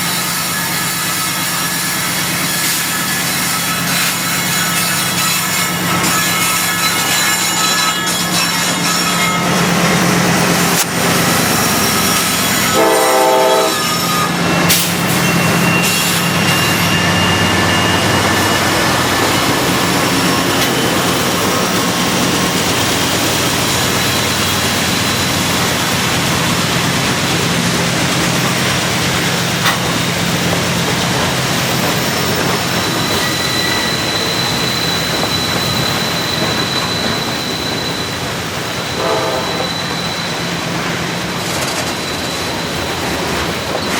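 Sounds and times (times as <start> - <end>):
high wheel squeal: 0.0 - 43.9
train horn blast: 12.6 - 14.0, 38.9 - 39.8.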